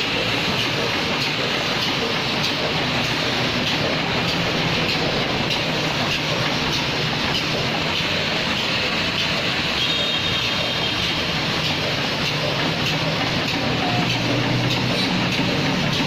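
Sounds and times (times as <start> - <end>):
label cutting machine running: 0.0 - 16.0.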